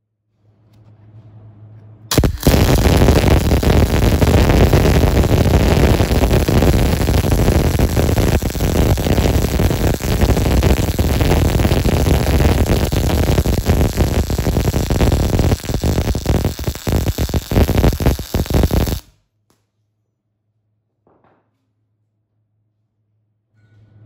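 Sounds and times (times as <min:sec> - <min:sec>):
welding arc crackling: 0:02.1 - 0:19.1.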